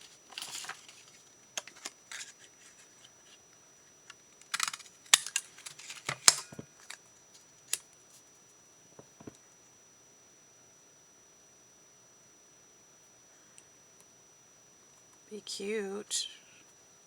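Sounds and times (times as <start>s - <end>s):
paper rustling: 0.0s - 3.4s, 4.4s - 7.0s.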